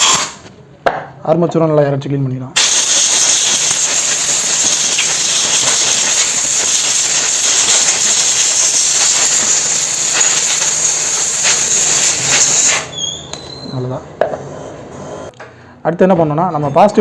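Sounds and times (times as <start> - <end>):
air blow gun hissing: 0.0 - 0.4, 2.6 - 13.0.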